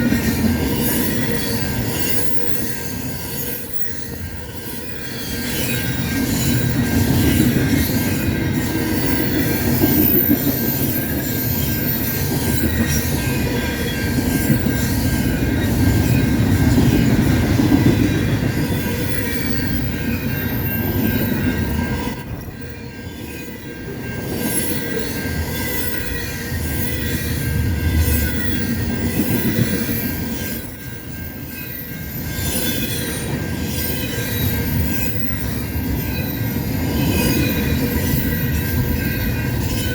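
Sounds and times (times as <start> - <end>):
freight train wheels rumbling on rail: 0.0 - 39.9.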